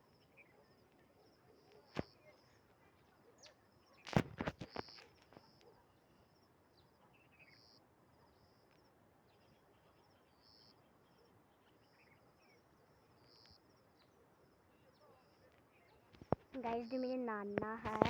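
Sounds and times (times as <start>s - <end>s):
insects chirping: 16.2s - 18.0s.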